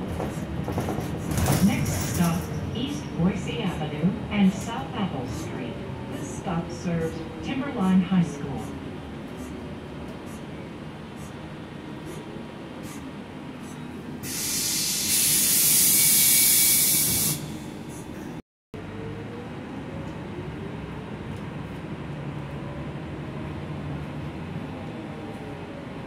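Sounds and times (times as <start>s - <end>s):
bus engine whining: 0.0s - 26.0s
compressed air hissing: 14.2s - 18.0s.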